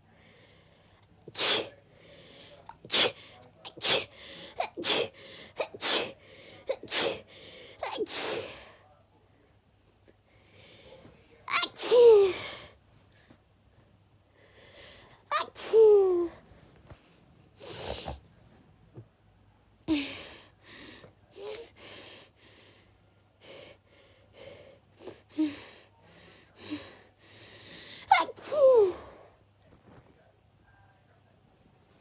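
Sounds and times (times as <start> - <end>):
person sneezing: 1.3 - 1.8, 2.7 - 8.7, 11.5 - 12.7, 15.3 - 16.4.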